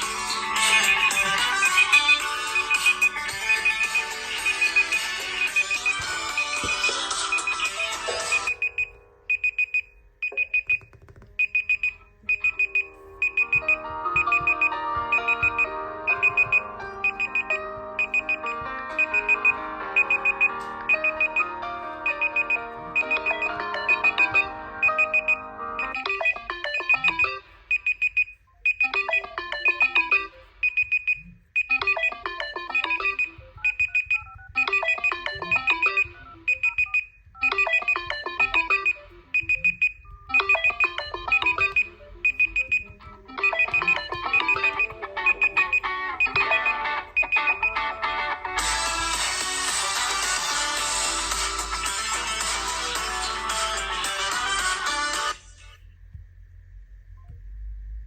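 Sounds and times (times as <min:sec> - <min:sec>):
choppy chord bursts: 0:00.0 - 0:09.4, 0:12.1 - 0:27.5, 0:40.3 - 0:55.3
high electronic beep: 0:00.0 - 0:10.8, 0:11.4 - 0:47.9
synthesized ringtone melody: 0:00.0 - 0:55.6.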